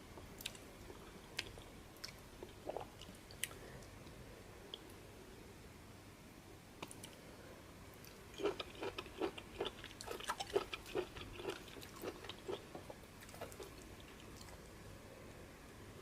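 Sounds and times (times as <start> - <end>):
man chewing with mouth smacks: 8.0 - 14.7.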